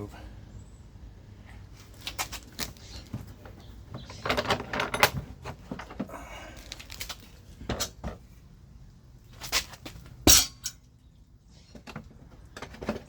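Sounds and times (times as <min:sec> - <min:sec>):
stove kit parts clinking and clattering: 0:04.1 - 0:06.1, 0:10.3 - 0:10.8.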